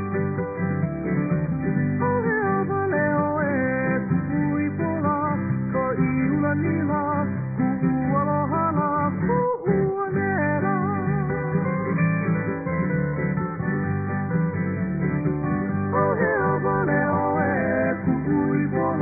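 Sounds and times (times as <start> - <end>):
guitar background music: 0.0 - 19.0.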